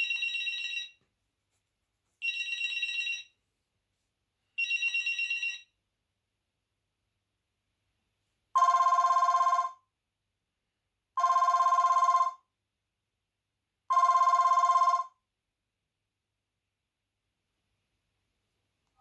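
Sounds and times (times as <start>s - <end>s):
trilling telephone ringtone: 0.0s - 1.0s, 2.2s - 3.3s, 4.6s - 5.7s, 8.6s - 9.8s, 11.2s - 12.4s, 13.9s - 15.2s.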